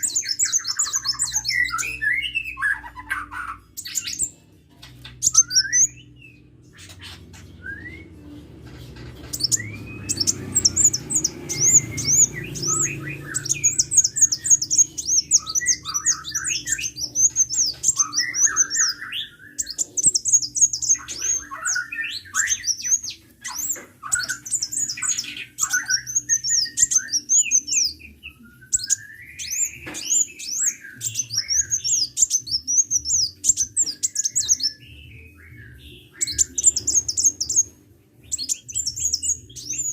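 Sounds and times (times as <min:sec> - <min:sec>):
bird singing sharp high notes: 0:09.2 - 0:37.7.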